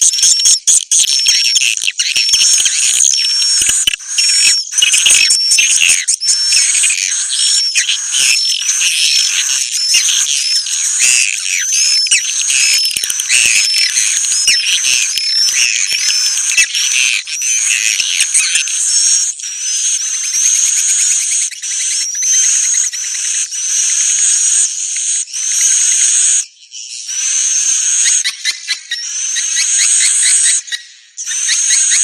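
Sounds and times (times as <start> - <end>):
songbird chirps: 0.0 - 32.0
buzzy bird trills: 2.0 - 19.8.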